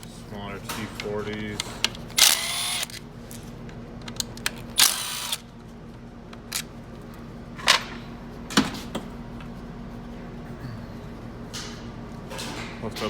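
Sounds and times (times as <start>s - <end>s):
power driver whirring: 1.8s - 3.0s, 4.2s - 5.5s.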